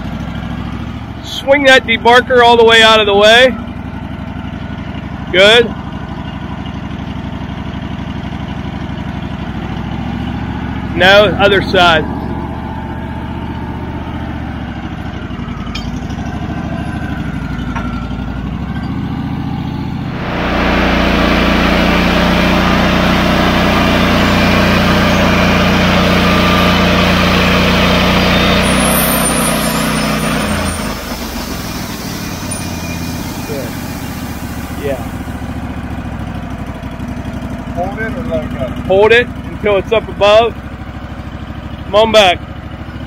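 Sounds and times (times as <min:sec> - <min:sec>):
sawmill engine running: 0:00.0 - 0:43.0
saw blade hissing: 0:27.8 - 0:35.5.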